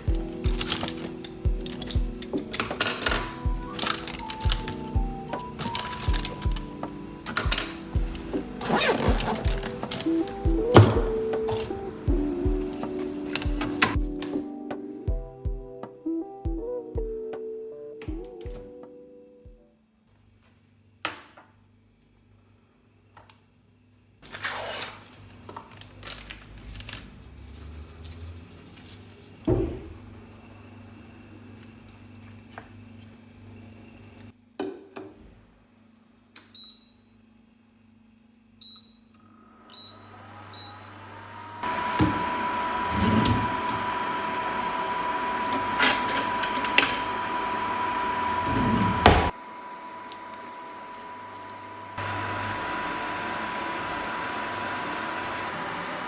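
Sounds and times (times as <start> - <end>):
handling knocks and clicks: 0.0 - 14.4
microwave oven humming: 38.6 - 56.0.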